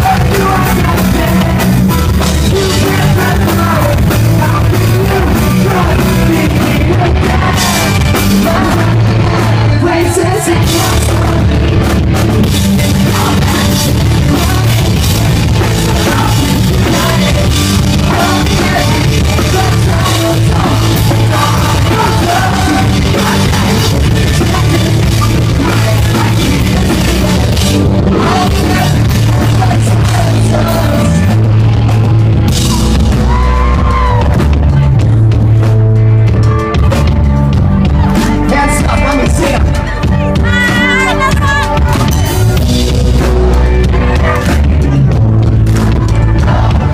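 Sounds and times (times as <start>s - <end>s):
live pop-punk band: 0.0s - 46.9s
person singing and shouting: 38.1s - 42.6s.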